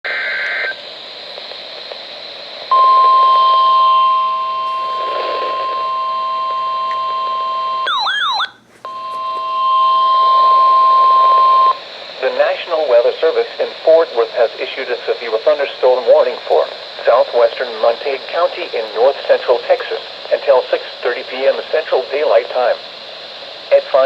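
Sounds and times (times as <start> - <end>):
faint radio hiss: 0.1 - 4.0, 4.6 - 7.5, 10.5 - 24.0
steady alarm beep: 2.7 - 11.8.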